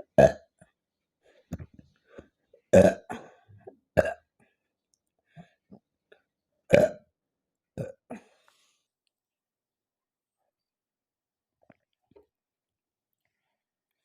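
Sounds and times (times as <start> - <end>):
woman burping: 2.7 - 4.3, 6.7 - 7.0, 7.8 - 8.2.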